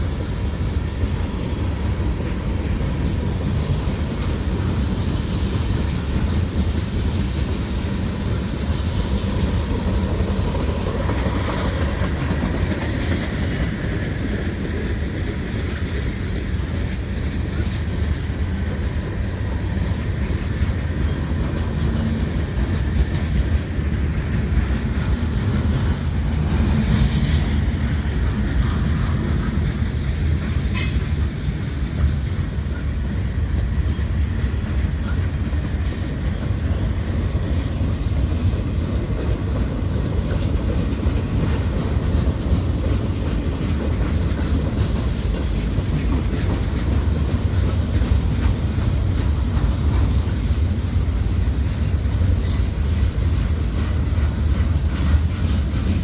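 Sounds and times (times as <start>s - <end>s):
clickety-clack over rail joints: 0.0s - 56.0s
train wheels rumbling on rails: 0.0s - 56.0s.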